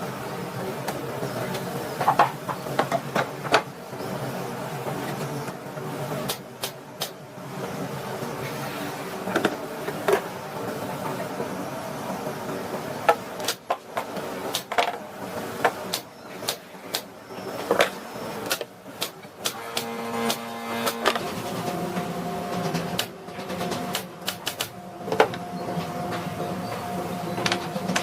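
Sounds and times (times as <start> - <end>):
steady background noise: 0.0 - 28.0.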